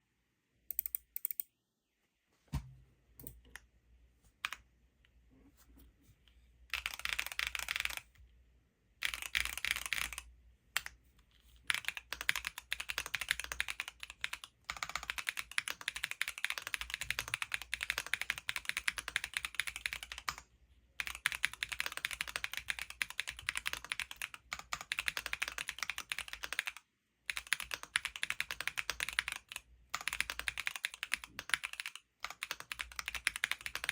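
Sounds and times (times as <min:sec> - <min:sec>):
typing on a mechanical keyboard: 0:06.7 - 0:08.1, 0:09.0 - 0:11.0, 0:11.7 - 0:20.4, 0:21.0 - 0:33.9.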